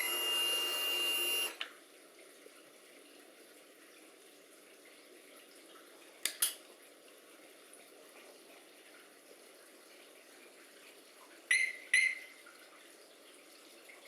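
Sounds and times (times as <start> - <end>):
high alarm beep: 11.5 - 12.2
security alarm chirping: 11.5 - 12.2.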